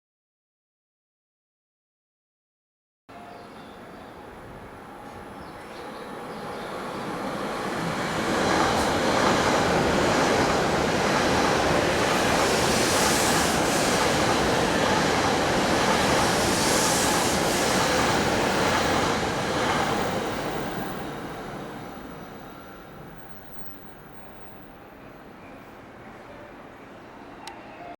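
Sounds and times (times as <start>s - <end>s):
train wheels rumbling on rail: 3.8s - 25.2s.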